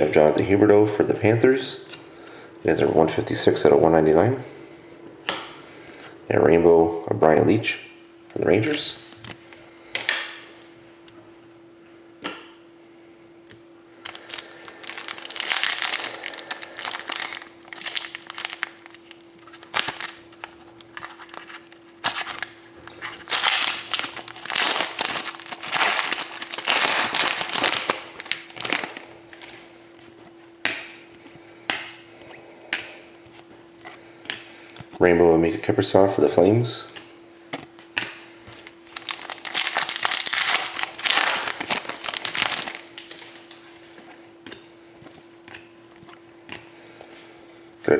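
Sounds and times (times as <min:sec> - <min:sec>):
faint steady hum: 0:00.0 - 0:47.9
cards and packaging rustling: 0:14.1 - 0:29.6, 0:38.6 - 0:43.6.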